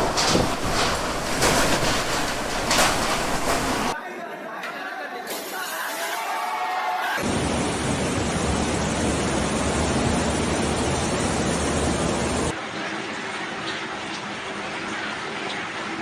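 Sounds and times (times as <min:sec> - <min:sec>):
heavy rain: 0:00.0 - 0:04.0, 0:07.2 - 0:12.5.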